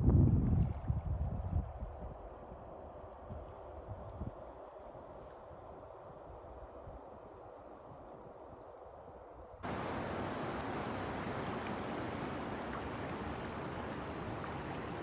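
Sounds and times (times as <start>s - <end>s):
river water rushing: 9.6s - 15.0s.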